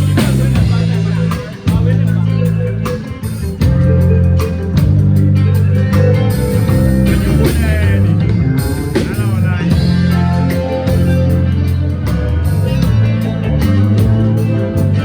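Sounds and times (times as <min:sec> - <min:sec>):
bass guitar low notes: 0:00.0 - 0:15.0
drum hits: 0:00.0 - 0:15.0
person singing: 0:06.6 - 0:11.0.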